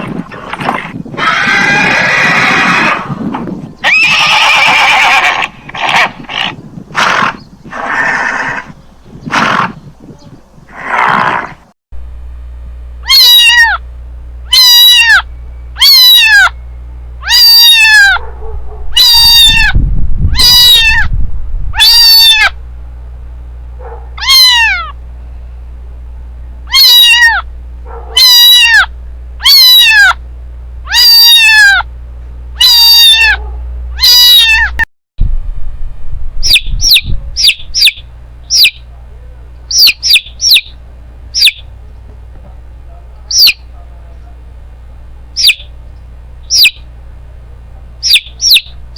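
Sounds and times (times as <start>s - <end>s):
low hum: 12.0s - 48.9s
kitten mewing: 13.0s - 13.8s, 14.5s - 16.5s, 17.2s - 21.1s, 21.7s - 22.6s, 24.1s - 25.0s, 26.7s - 27.5s, 28.1s - 30.2s, 30.9s - 31.9s, 32.6s - 33.4s, 34.0s - 34.9s, 36.4s - 40.7s, 41.4s - 41.6s, 42.9s - 43.9s, 45.4s - 45.6s, 46.5s - 46.8s, 48.0s - 48.7s
high bird chirps: 36.4s - 38.9s, 39.7s - 41.7s, 43.3s - 43.7s, 45.4s - 45.7s, 46.4s - 46.9s, 48.0s - 48.8s.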